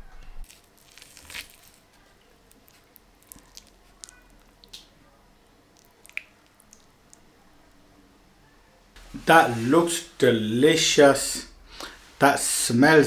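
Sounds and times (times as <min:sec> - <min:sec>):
food squelches and crunches: 0:00.4 - 0:07.6.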